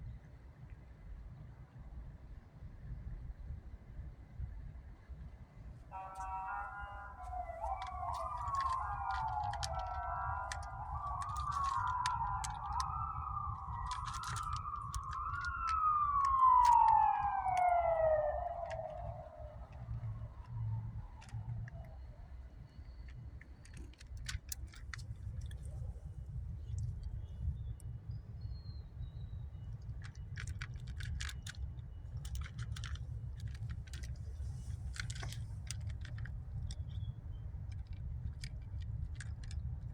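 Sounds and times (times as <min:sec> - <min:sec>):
siren wailing: 0:05.9 - 0:22.6
low rumble: 0:06.0 - 0:22.6
cats crunching dry food: 0:06.2 - 0:20.6, 0:29.8 - 0:37.0, 0:37.6 - 0:39.9
sharp clicks: 0:07.2 - 0:22.0.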